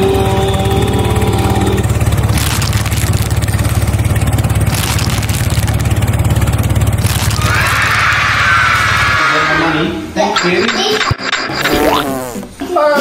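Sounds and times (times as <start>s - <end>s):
vehicle engine running: 0.0s - 9.5s.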